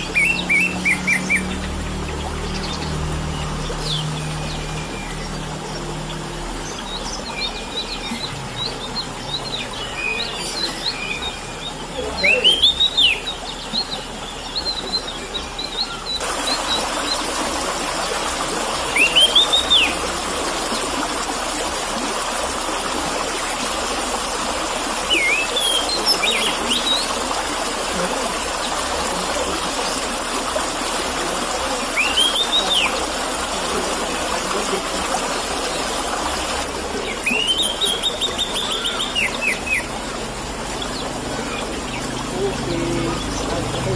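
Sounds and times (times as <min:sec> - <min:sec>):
trickling water: 0:00.0 - 0:43.9
faint high bird chirps: 0:37.1 - 0:39.9.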